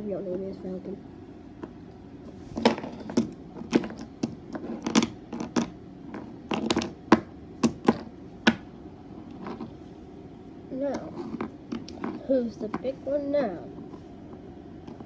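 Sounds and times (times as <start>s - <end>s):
hard objects clicking and knocking: 2.5s - 8.7s, 11.0s - 12.8s.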